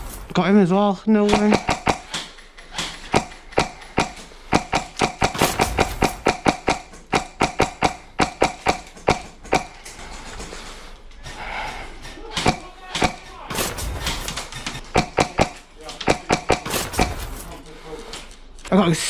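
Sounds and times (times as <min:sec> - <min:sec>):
airsoft guns firing sharp cracks: 0:01.4 - 0:09.7, 0:12.5 - 0:17.4.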